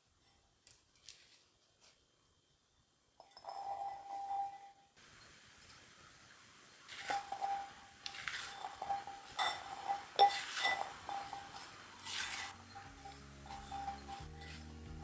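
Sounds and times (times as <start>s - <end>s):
dishes and utensils clinking: 6.9s - 15.0s.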